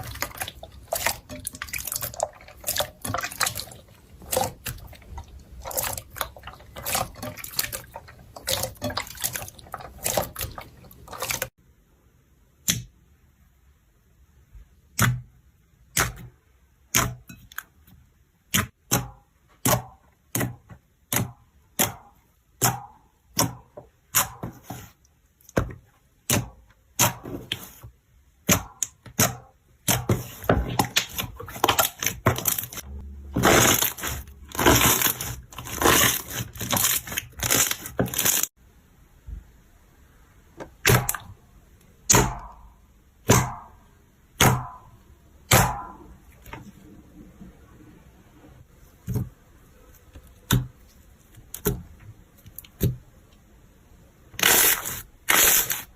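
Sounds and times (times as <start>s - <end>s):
slime popping and crackling: 33.4s - 38.5s.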